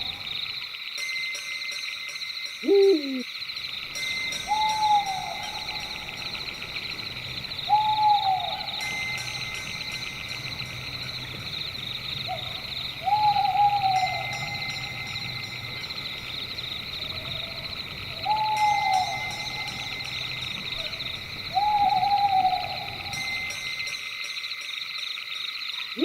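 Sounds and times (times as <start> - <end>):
high chirring of night insects: 0.0 - 26.0
owl hooting: 2.6 - 3.2, 4.2 - 23.5.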